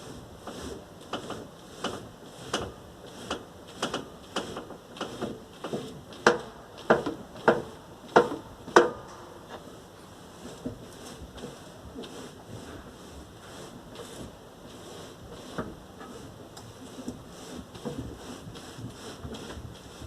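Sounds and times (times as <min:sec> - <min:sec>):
knocking under car hood: 0:06.3 - 0:09.0.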